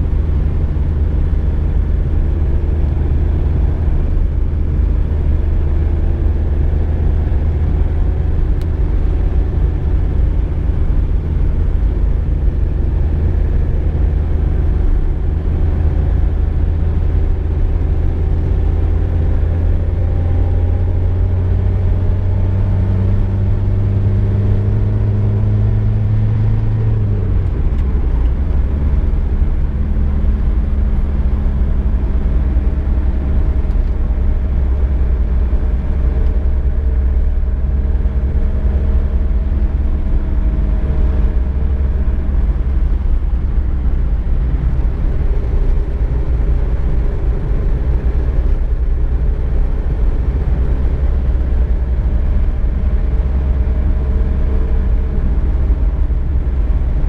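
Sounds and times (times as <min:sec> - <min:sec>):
car engine drone: 0:00.0 - 0:57.0
road rumble: 0:00.0 - 0:57.0.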